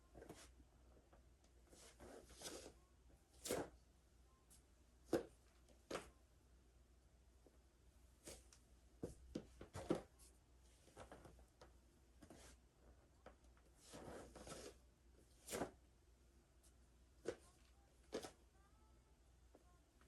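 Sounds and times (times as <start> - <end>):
clothing rustling: 13.8 - 14.8.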